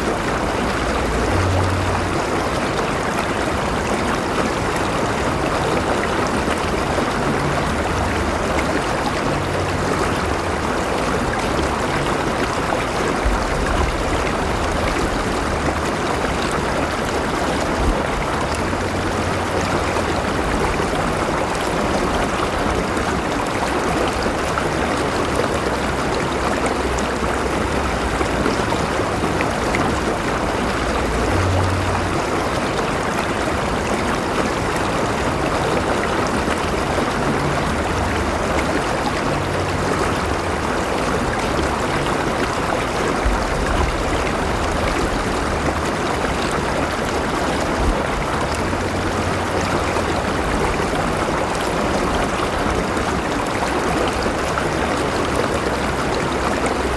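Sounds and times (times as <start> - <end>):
low rumble: 0.0 - 4.5, 6.6 - 23.0, 35.8 - 53.2
river water rushing over rocks: 0.0 - 56.9.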